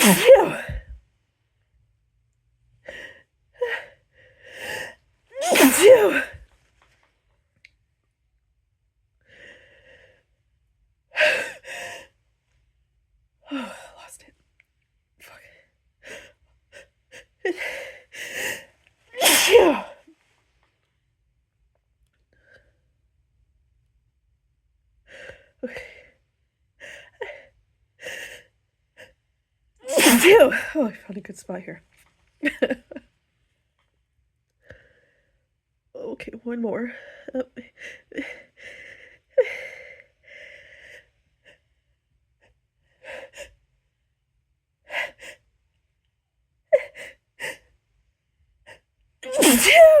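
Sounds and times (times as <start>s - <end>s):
person gasping before sneeze: 0.0s - 0.9s, 5.4s - 6.4s, 19.2s - 20.0s, 29.9s - 30.7s, 49.3s - 50.0s.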